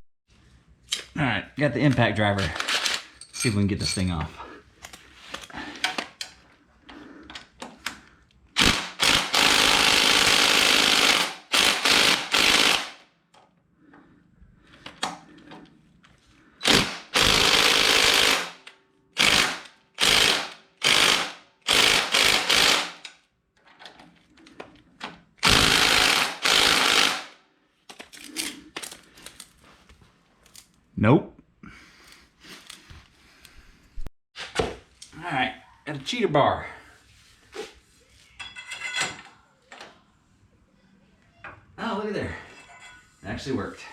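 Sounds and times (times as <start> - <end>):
impact driver hammering: 8.6 - 12.9, 16.6 - 18.6, 19.2 - 23.0, 25.4 - 27.3.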